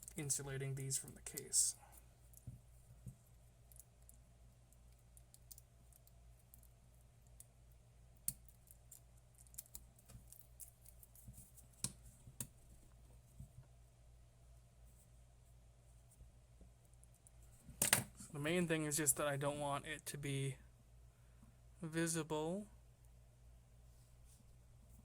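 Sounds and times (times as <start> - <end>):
small parts clicking: 3.7 - 6.7.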